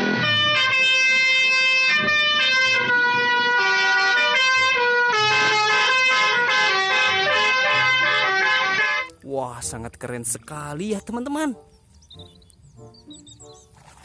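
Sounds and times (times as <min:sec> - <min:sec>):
multi-tone air horn tune: 0:00.0 - 0:09.1.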